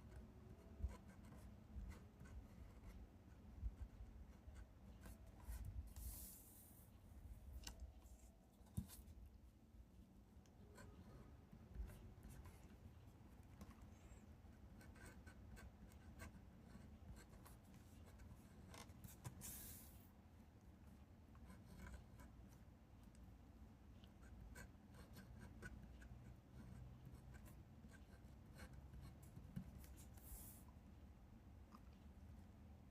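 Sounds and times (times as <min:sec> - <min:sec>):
pen scratching on paper: 0:00.1 - 0:06.8, 0:14.5 - 0:19.9, 0:21.4 - 0:22.3, 0:24.2 - 0:30.6
soft paper rustle: 0:29.6 - 0:30.7.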